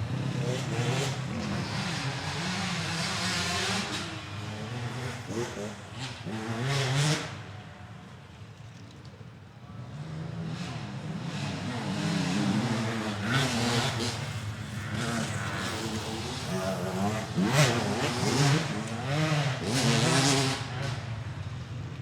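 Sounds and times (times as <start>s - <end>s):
motorcycle engine revving: 10.3s - 22.0s.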